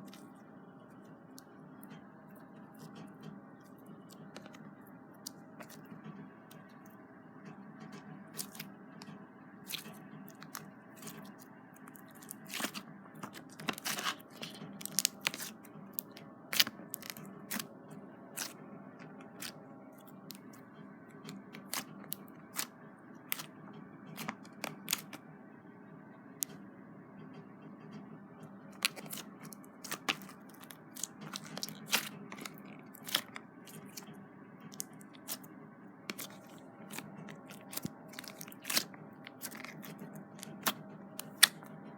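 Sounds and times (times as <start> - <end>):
faint steady hum: 0.0 - 41.9
slime squished by hand: 9.7 - 17.7, 18.4 - 18.6, 19.2 - 19.6, 21.3 - 22.7, 24.2 - 25.2, 28.8 - 34.0, 36.1 - 41.6.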